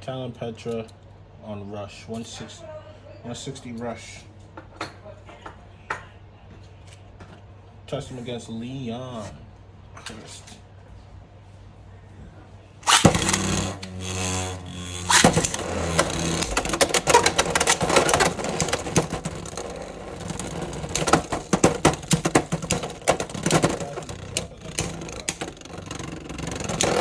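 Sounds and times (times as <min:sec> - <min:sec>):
spinning tops clattering in stadium: 0:12.8 - 0:27.0.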